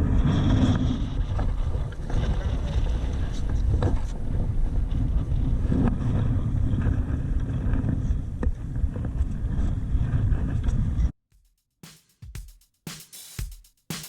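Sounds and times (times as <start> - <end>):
strong wind buffeting microphone: 0.0 - 11.1
music drum hit: 11.4 - 14.0
sharp knocks and slaps: 11.4 - 14.0.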